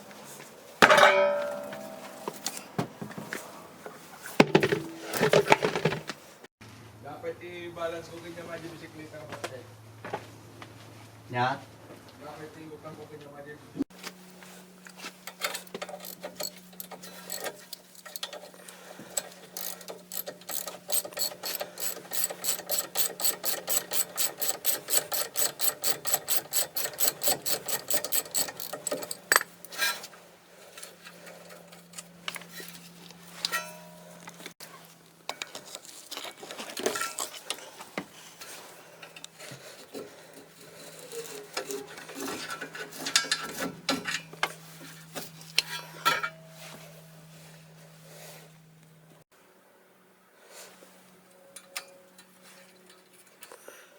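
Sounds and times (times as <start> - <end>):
metal tools clinking: 0.8 - 2.7, 14.9 - 30.1, 35.3 - 37.6
ratchet wrench clicking: 15.3 - 29.5.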